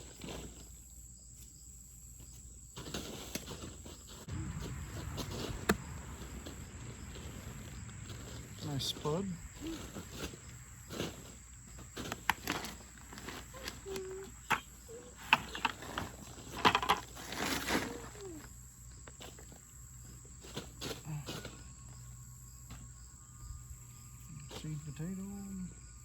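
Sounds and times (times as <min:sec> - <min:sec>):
hands rustling in soil: 0:00.0 - 0:23.0
high insect drone: 0:00.2 - 0:26.0
small child vocalizing: 0:09.6 - 0:10.0, 0:13.5 - 0:15.2, 0:17.7 - 0:18.5.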